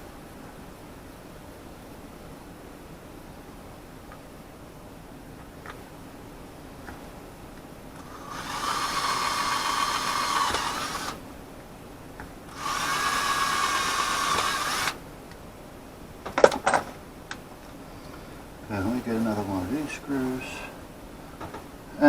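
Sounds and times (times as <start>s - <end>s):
small power drill running: 8.0s - 11.2s, 12.5s - 15.0s.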